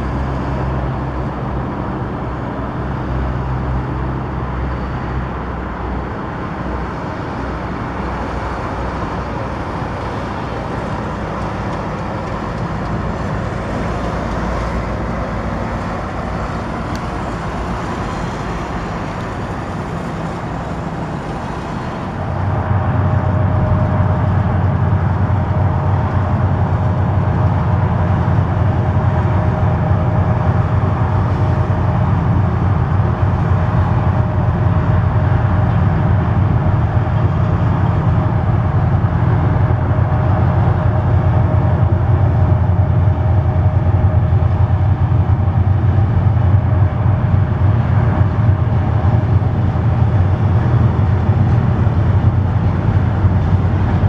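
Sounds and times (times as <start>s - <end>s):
locomotive engine drone: 0.0s - 54.0s.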